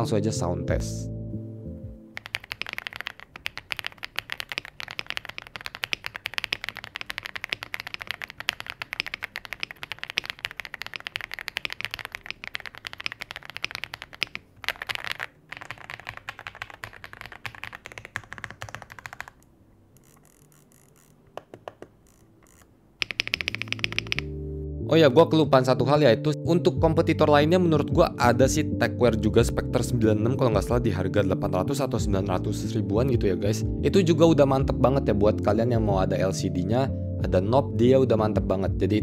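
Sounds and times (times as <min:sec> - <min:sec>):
mechanical keyboard typing: 0:02.1 - 0:24.3.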